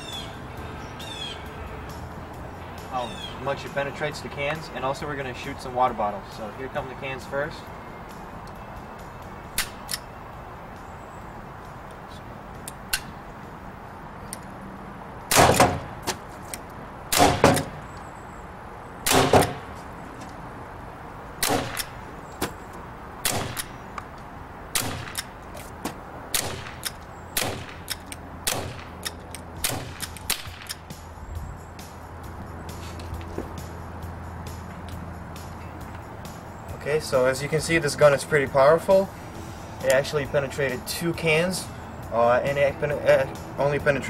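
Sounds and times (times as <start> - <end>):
pellet revolver shots: 9.6 - 10.1, 15.3 - 15.9, 17.1 - 17.8, 19.0 - 19.6, 21.4 - 22.0, 23.2 - 23.8, 24.7 - 25.3, 26.3 - 30.9.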